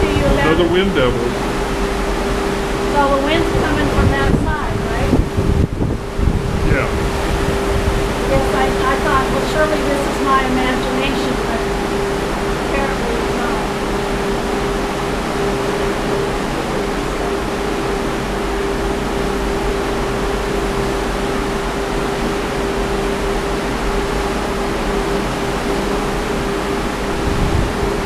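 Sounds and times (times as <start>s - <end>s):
strong wind rushing: 0.0s - 21.9s, 26.3s - 28.0s
steady single-pitched hum: 0.0s - 28.0s.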